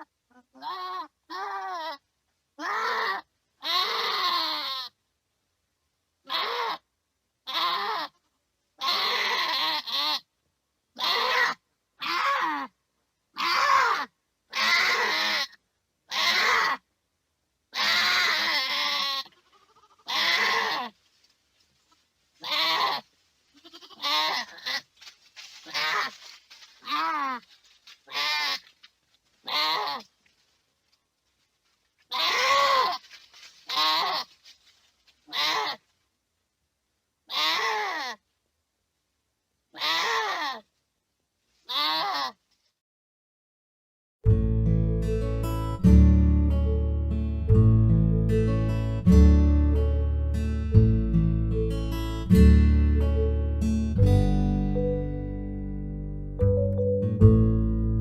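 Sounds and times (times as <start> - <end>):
goats bleating: 2.6 - 4.9, 6.3 - 6.8, 7.5 - 8.2, 8.8 - 10.2, 11.0 - 12.7, 13.4 - 15.5, 16.1 - 16.8, 17.8 - 20.9, 22.4 - 24.8, 25.5 - 28.7, 29.4 - 30.1, 32.1 - 34.4, 35.3 - 35.8, 37.3 - 38.1.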